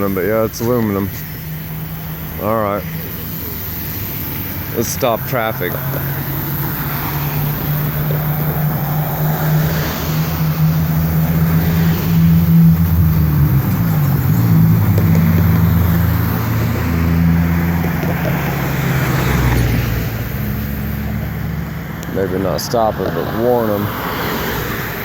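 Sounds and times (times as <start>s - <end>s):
car engines humming: 0.0s - 25.0s
tyre noise: 2.7s - 20.0s.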